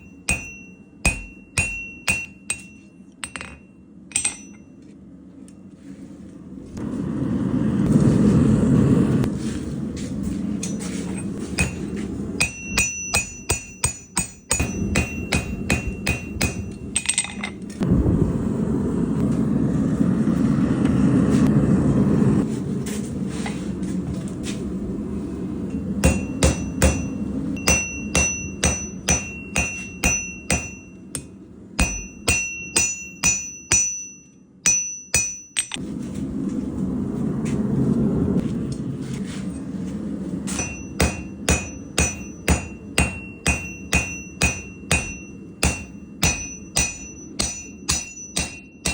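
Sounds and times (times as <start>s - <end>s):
hammer striking steel on anvil: 0.0s - 4.8s, 10.6s - 17.6s, 25.7s - 35.8s, 40.5s - 48.9s
steady rushing noise: 6.5s - 10.5s, 17.8s - 30.1s, 35.8s - 43.8s.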